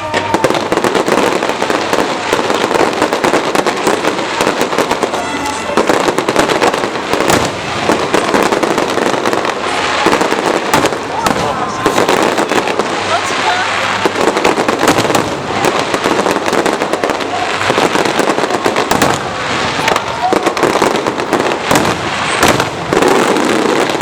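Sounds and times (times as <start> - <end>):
fireworks crackling and popping: 0.0 - 24.0
sharp firework bang: 0.0 - 24.0.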